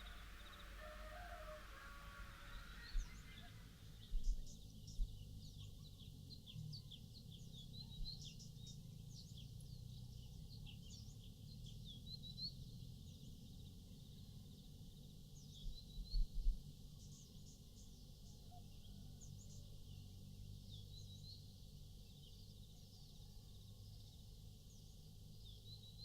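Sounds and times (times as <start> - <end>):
birds chirping: 0.0 - 6.1.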